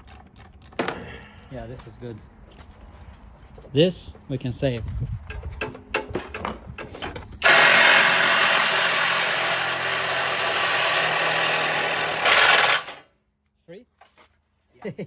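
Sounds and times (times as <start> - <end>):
power drill running: 7.4 - 13.0.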